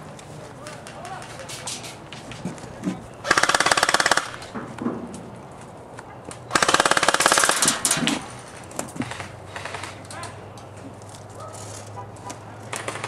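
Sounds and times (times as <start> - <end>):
airsoft gun full-auto bursts: 3.2 - 4.4, 6.5 - 7.8, 9.1 - 10.0, 12.7 - 13.0.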